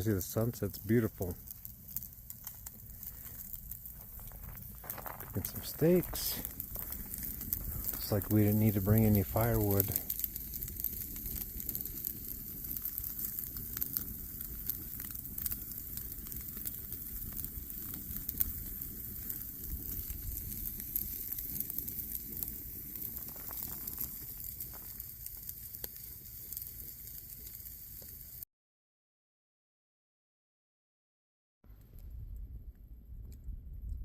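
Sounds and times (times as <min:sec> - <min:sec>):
steady hiss: 0:00.0 - 0:28.4
wood fire crackling and popping: 0:00.0 - 0:28.4
low rumble: 0:02.7 - 0:10.1, 0:31.8 - 0:34.0.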